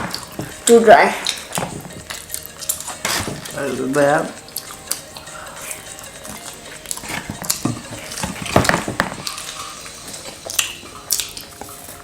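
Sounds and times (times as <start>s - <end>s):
people chewing and crunching: 0.0s - 12.0s.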